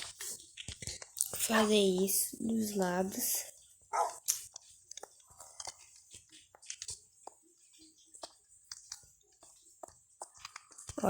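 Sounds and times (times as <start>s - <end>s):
small objects clicking and tapping: 0.0s - 1.4s, 4.2s - 11.0s
crackle: 0.0s - 1.5s, 3.5s - 11.0s.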